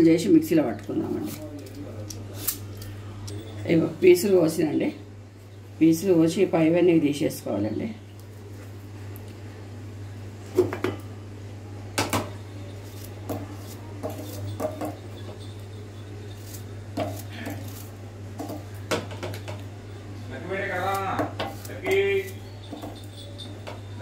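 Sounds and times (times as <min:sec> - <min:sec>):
knife and dishes clinking: 0:12.0 - 0:19.7, 0:20.8 - 0:24.0.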